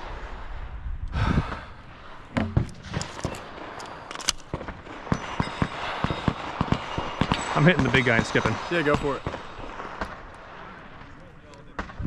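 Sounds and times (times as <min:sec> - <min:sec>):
hard breathing: 0:01.1 - 0:03.5, 0:05.5 - 0:07.2.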